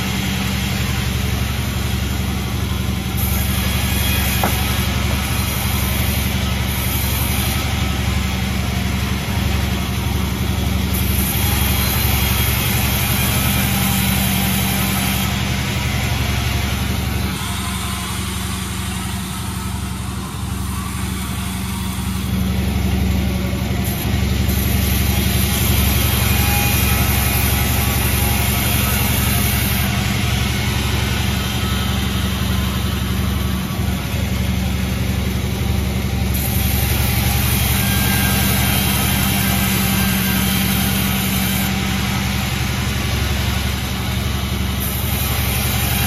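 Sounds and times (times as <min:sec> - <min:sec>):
sawmill machinery humming: 0:00.0 - 0:46.0.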